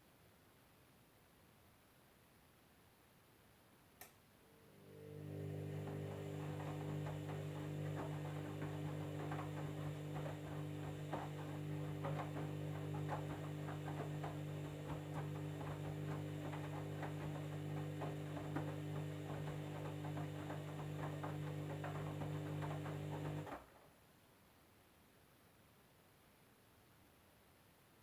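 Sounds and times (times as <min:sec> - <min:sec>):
washing machine humming: 0:04.4 - 0:23.7.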